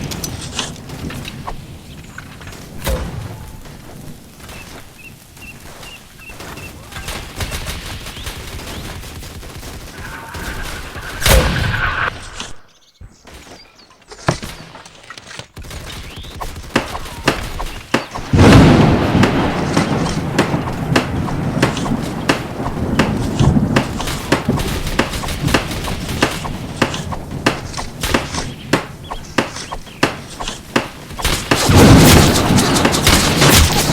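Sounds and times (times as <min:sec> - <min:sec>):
gunshots and bursts: 0:00.0 - 0:12.6, 0:14.2 - 0:33.9
rapid gunfire: 0:06.2 - 0:11.5, 0:15.6 - 0:33.9.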